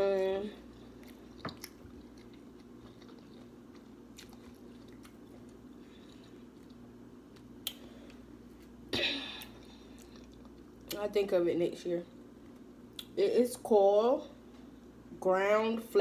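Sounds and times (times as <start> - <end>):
person chewing: 0.6 - 11.0.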